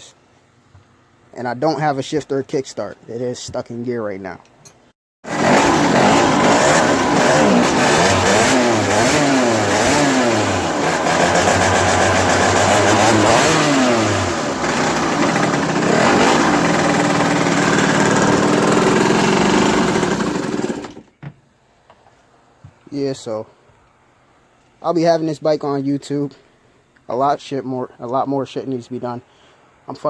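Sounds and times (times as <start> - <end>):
dirt bike engine revving: 5.3 - 21.0.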